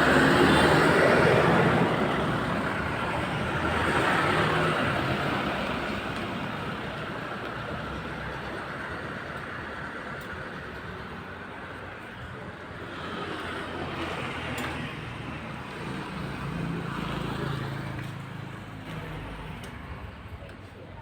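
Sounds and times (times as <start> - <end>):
heavy vehicle engine running: 0.0 - 11.8.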